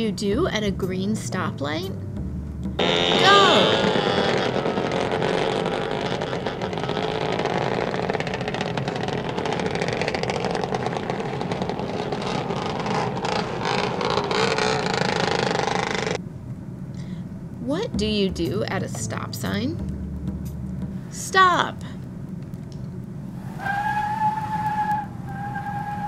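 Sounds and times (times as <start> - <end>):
vehicle engines driving past: 2.0 - 16.2, 21.9 - 26.0.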